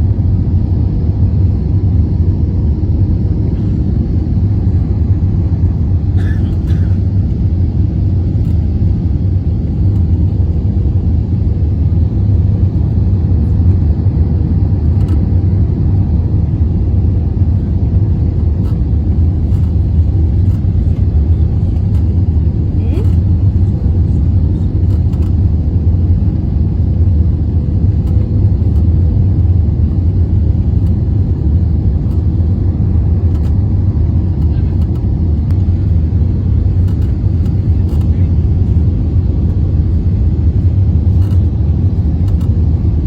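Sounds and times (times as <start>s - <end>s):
vehicle interior rumble: 14.6s - 43.0s.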